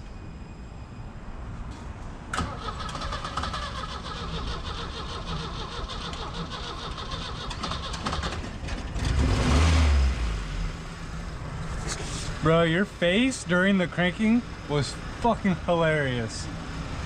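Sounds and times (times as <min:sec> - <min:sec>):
starter cranking engine: 0:02.4 - 0:09.3
engine running with misfire: 0:02.4 - 0:10.3.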